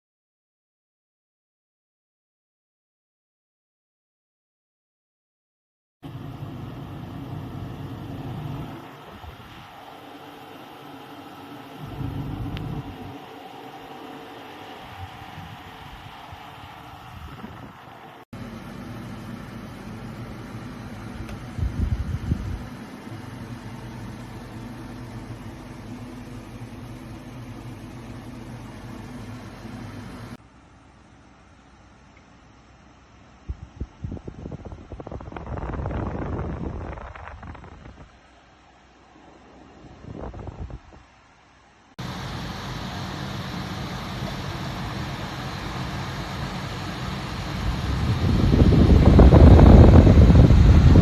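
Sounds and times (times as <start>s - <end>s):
air conditioner fan whooshing: 6.1s - 30.4s, 42.0s - 51.0s
low compressor hum: 6.1s - 35.0s, 42.0s - 51.0s.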